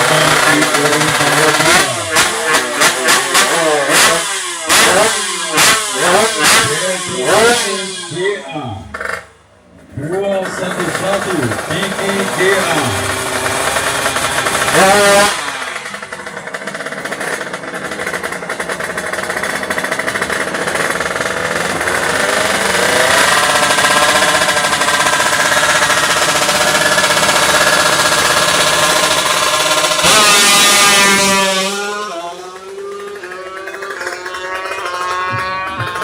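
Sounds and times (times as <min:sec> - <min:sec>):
motorcycle engines revving: 0:00.0 - 0:36.0.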